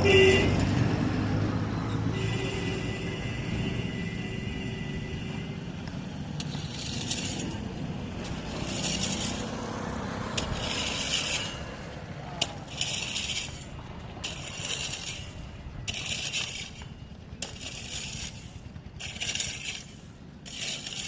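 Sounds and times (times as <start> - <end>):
steady low rumble: 4.4 - 21.0
crushed stone being scraped: 6.4 - 9.7, 10.3 - 21.0.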